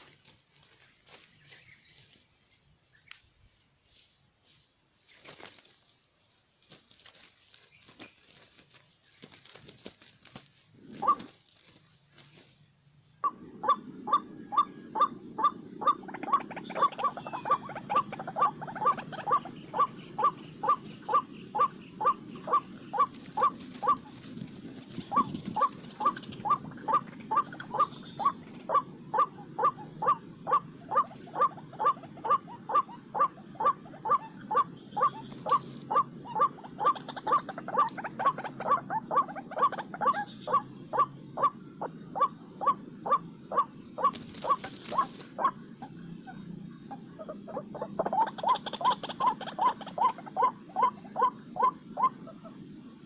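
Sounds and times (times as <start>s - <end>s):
waterhen calling: 10.9s - 11.3s, 13.2s - 24.2s, 24.9s - 52.6s.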